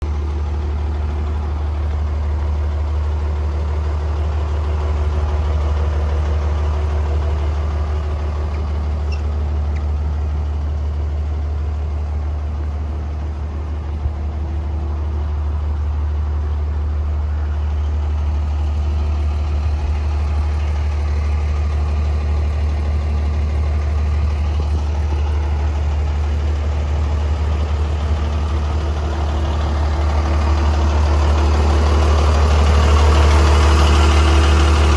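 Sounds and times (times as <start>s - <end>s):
diesel engine idling: 0.0s - 34.9s.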